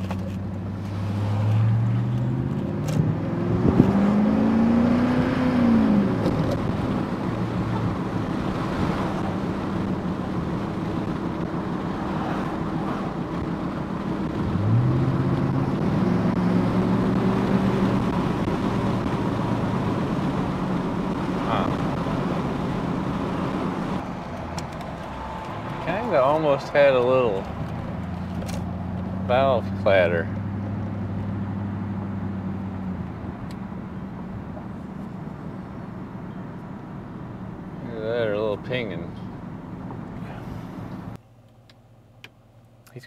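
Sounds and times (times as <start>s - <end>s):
pickup engine accelerating: 0.0s - 41.2s
road noise: 0.0s - 43.0s.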